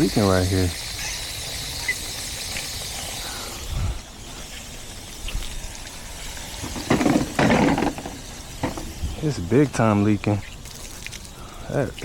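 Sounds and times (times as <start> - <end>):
water hissing from hose: 0.0 - 12.0
handling noises: 6.6 - 9.0.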